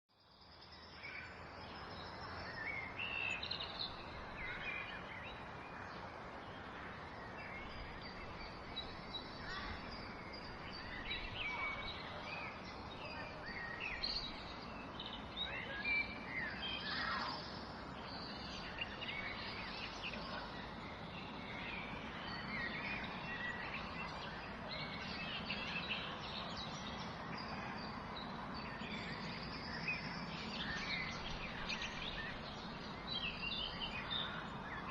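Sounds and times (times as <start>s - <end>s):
birds chirping and singing: 0.2s - 34.9s
steady background noise: 0.4s - 34.9s.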